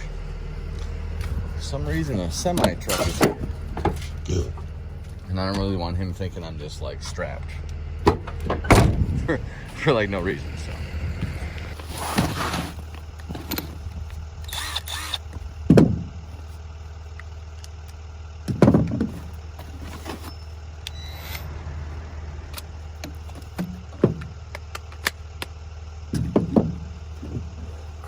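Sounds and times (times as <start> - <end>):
heavy thuds: 0.0 - 6.3, 7.5 - 14.4
truck engine idling: 0.0 - 28.0.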